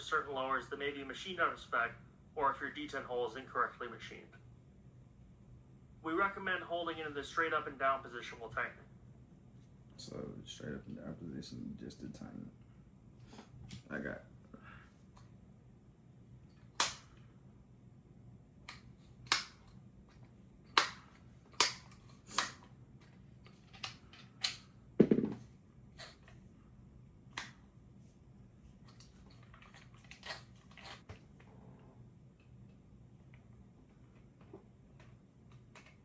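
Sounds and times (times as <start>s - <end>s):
heavy knock with dull thud: 25.0s - 25.4s.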